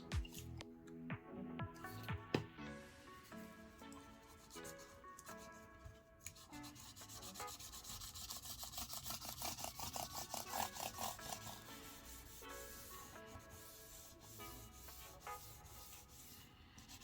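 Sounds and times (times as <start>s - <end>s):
faint background music: 0.0s - 17.0s
cloth rubbing on keyboard keys: 6.5s - 17.0s.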